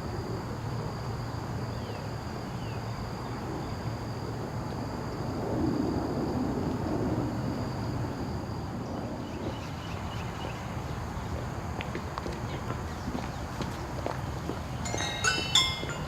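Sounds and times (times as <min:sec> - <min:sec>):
thin high steady tone: 0:14.8 - 0:16.0.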